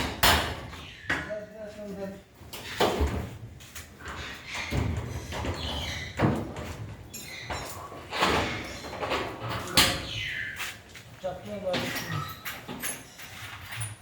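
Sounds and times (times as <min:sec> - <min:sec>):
sharp knocks and clatters: 0:00.0 - 0:01.4, 0:02.4 - 0:10.3
birds calling: 0:00.0 - 0:01.6, 0:03.9 - 0:13.3.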